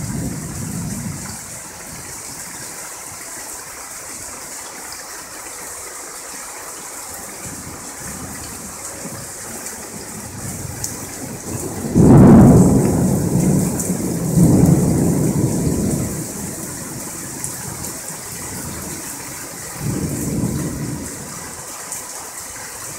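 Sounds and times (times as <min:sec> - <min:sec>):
thunder crack and rumble: 0:00.0 - 0:02.5, 0:07.4 - 0:21.6
steady rain: 0:00.0 - 0:22.9.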